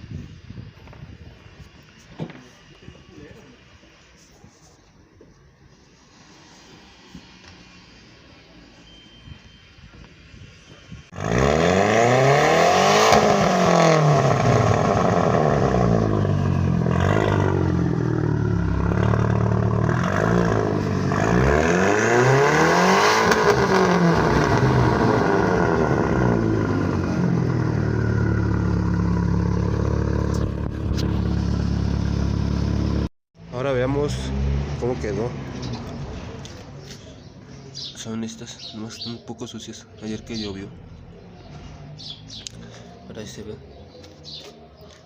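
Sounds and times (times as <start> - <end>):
car engine revving and idling: 11.1 - 36.7.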